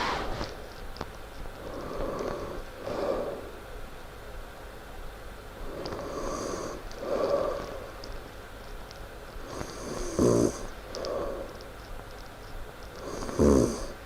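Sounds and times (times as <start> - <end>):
person snoring: 1.6 - 3.5, 5.6 - 7.9, 9.5 - 11.6, 13.0 - 14.0.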